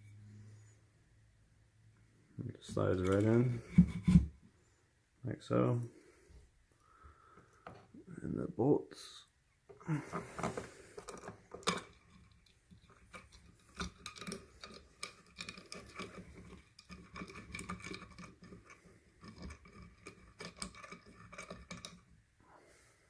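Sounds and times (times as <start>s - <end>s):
bolts clicking and scraping: 2.6s - 4.2s, 10.2s - 22.2s.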